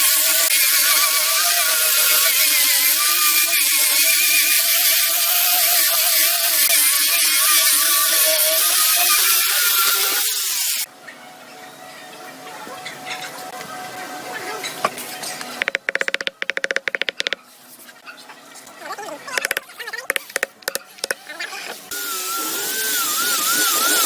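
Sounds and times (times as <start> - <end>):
electric power tool cutting wood: 21.9 - 24.0.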